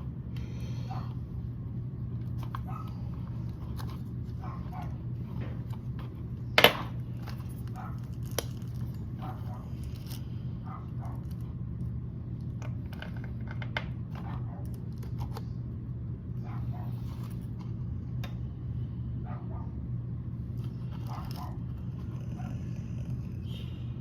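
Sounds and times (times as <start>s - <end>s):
steady low hum: 0.0s - 24.0s
dogs barking: 0.8s - 1.2s, 2.6s - 3.4s, 4.3s - 5.6s, 7.6s - 8.2s, 9.2s - 9.9s, 10.6s - 11.4s, 14.1s - 14.8s, 16.4s - 17.1s, 19.2s - 20.0s, 20.9s - 23.1s.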